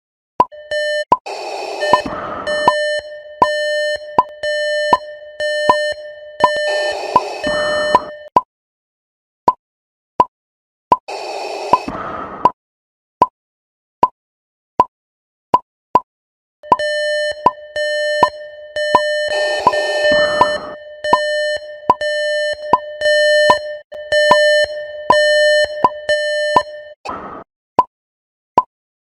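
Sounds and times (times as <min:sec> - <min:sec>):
electronic alarm buzzer beeping: 0:00.5 - 0:08.3, 0:16.6 - 0:27.0.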